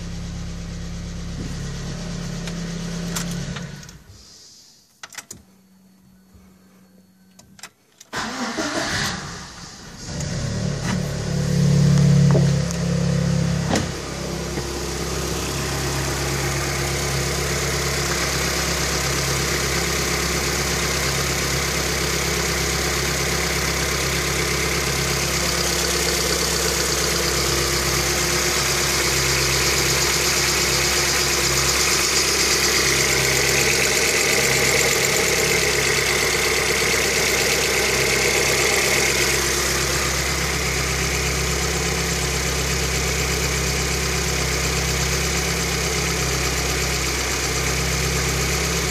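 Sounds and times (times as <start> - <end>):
car engine idling: 0.0 - 4.3, 8.1 - 48.9
engine knocking: 21.7 - 48.9.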